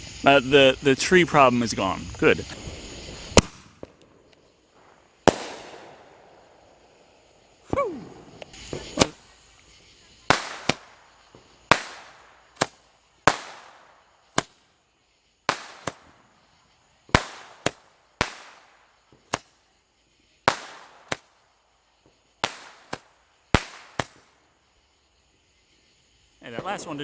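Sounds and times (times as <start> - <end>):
fireworks bangs: 0.0 - 27.0.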